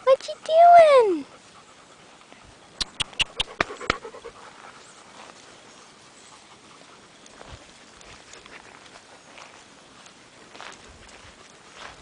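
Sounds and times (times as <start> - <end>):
dog panting: 0.0 - 9.4
sharp clicks: 2.8 - 4.0.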